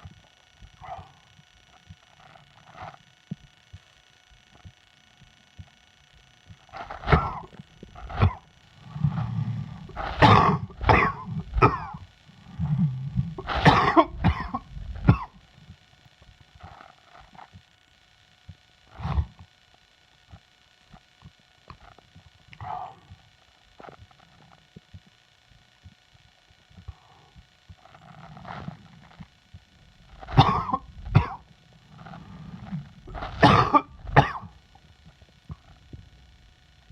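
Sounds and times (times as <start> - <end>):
breath: 0.8 - 1.3, 26.8 - 27.8
man coughing: 7.0 - 7.5, 10.1 - 12.0, 13.4 - 15.3, 30.3 - 31.4, 33.2 - 34.5.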